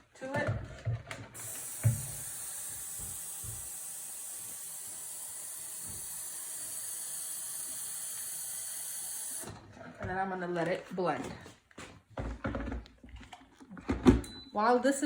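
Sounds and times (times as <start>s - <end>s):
tap water running into a pot: 1.4s - 9.6s.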